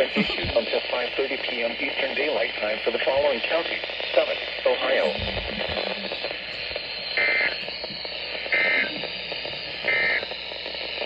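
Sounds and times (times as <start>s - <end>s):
radio static: 0.0s - 11.0s
buzzing data tone bursts: 4.8s - 11.0s.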